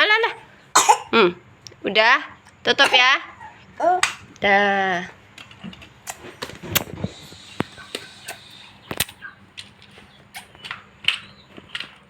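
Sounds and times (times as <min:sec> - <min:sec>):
small objects clicking and knocking: 0:08.9 - 0:12.0.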